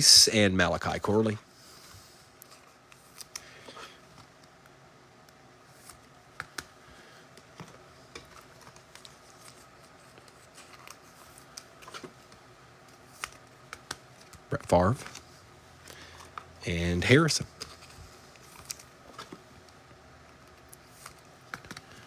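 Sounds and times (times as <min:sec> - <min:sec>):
trading cards clicking and scraping: 0:02.4 - 0:04.7, 0:05.7 - 0:16.5, 0:17.2 - 0:22.0.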